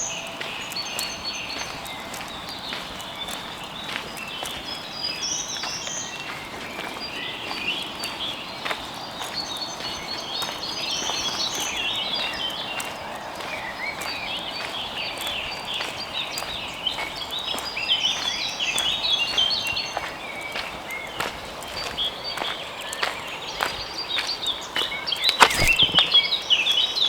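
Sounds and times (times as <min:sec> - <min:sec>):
forest birds singing: 0:00.0 - 0:27.0
footsteps on dry leaves: 0:25.3 - 0:26.3.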